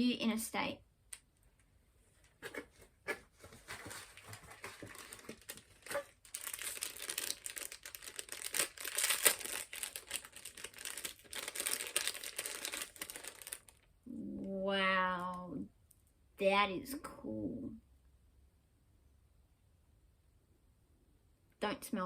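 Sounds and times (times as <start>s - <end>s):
packaging crinkling and rustling: 2.2s - 13.9s.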